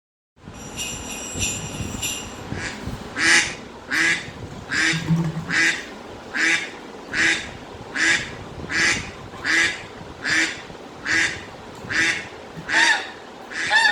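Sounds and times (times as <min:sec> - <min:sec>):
harsh raspy call: 0:11.9 - 0:13.9.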